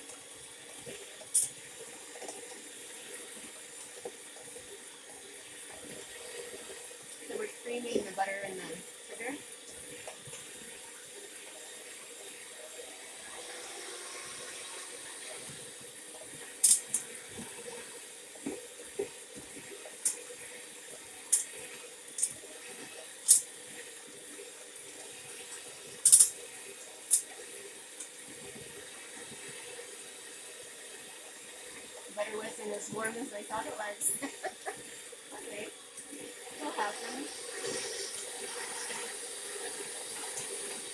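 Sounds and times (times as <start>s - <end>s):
electric hand mixer whirring: 12.8s - 15.9s.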